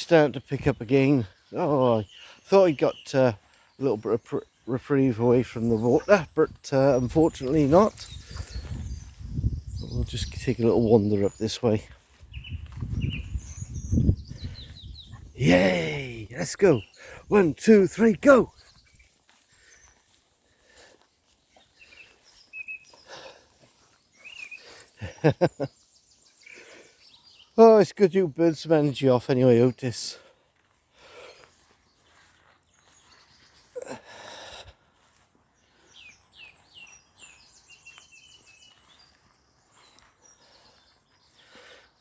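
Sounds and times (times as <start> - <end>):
outdoor noise: 0.0 - 28.7
small songbird singing: 0.0 - 34.0, 35.0 - 42.0.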